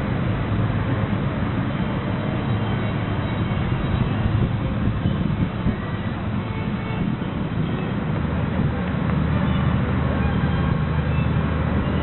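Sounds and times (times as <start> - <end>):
ferry engine low rumble: 0.0 - 12.0
wind on microphone: 3.9 - 8.8.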